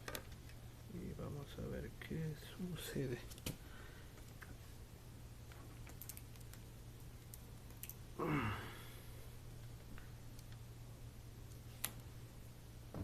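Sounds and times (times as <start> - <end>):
steady low hum: 0.0 - 13.0
small clicks: 5.8 - 6.6
short falling sigh: 8.2 - 9.0.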